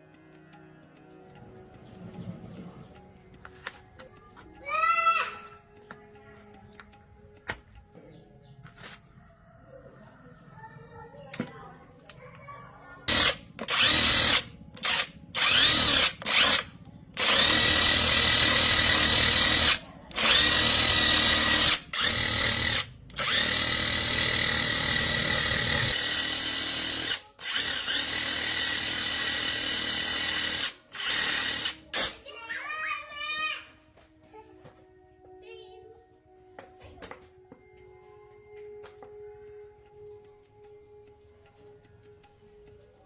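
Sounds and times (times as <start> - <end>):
electric power tool whining: 13.1 - 32.2.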